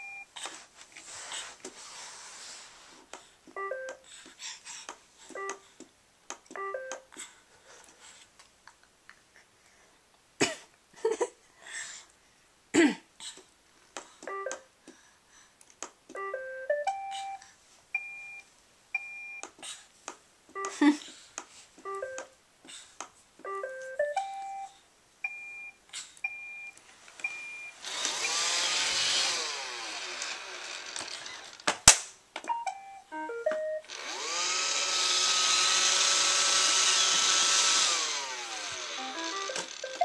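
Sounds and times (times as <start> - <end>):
robot vacuum electronic beep tunes: 38.4 - 40.0.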